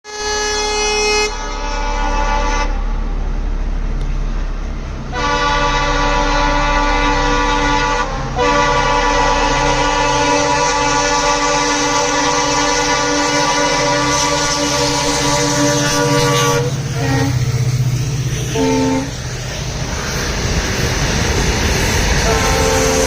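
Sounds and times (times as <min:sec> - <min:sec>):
locomotive air horn blasts: 0:00.0 - 0:02.8, 0:05.1 - 0:19.3, 0:22.2 - 0:23.0
low train rumble: 0:00.0 - 0:23.0.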